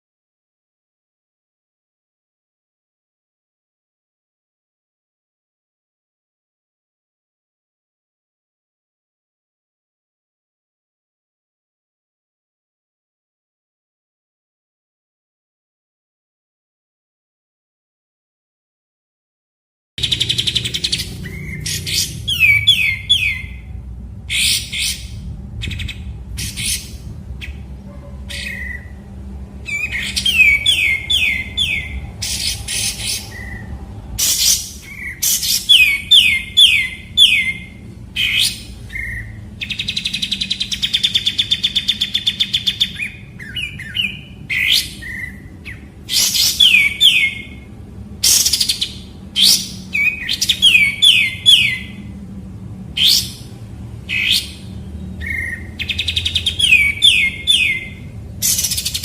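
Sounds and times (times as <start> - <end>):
bulbul singing: 20.0 - 52.2, 52.9 - 59.0.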